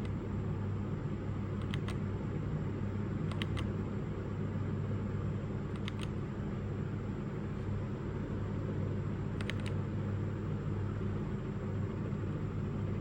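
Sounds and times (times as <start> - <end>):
steady low hum: 0.0 - 13.0
keyboard keys clicking: 1.6 - 2.0, 3.3 - 3.7, 5.8 - 6.1, 9.4 - 9.8.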